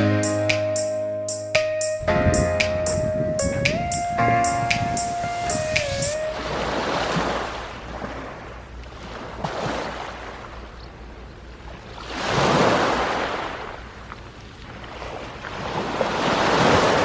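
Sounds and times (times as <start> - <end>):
sea waves washing in: 2.4 - 10.6, 11.6 - 13.8, 14.7 - 17.0.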